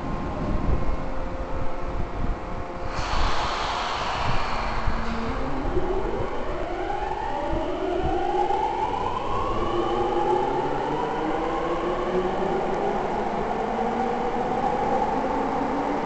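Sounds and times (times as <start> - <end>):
low rumble of train: 0.0 - 16.0.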